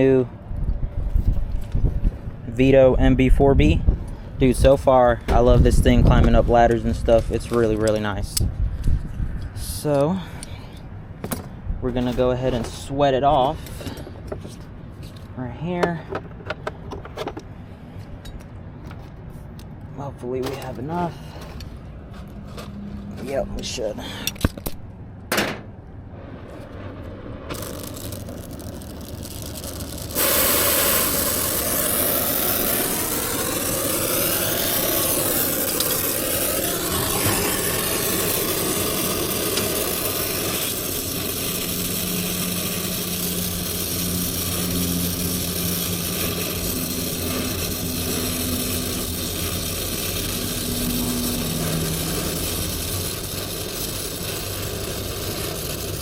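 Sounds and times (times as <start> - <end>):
brazing torch flame: 25.8 - 56.0.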